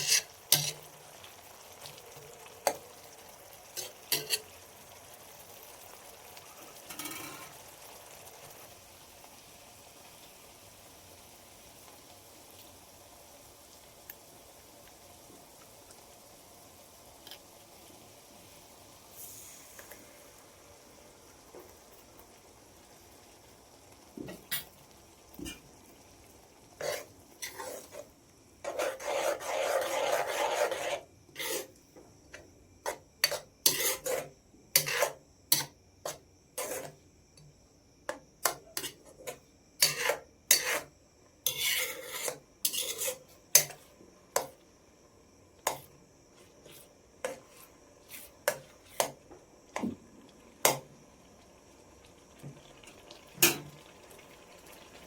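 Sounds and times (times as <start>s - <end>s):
metal utensil scraping a pot: 0.0s - 1.0s, 3.8s - 4.6s, 6.9s - 7.6s, 26.8s - 31.7s, 32.8s - 37.0s, 38.4s - 43.8s.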